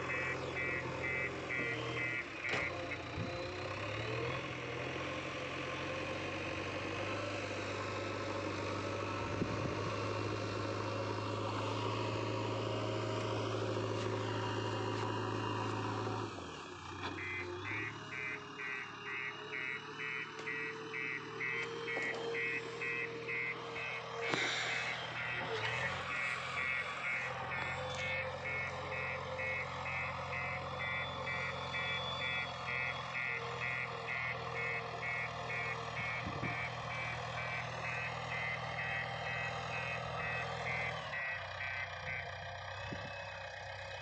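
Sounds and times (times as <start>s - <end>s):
reversing alarm beeping: 0.0s - 4.7s, 17.2s - 42.3s
diesel engine running: 0.0s - 44.0s.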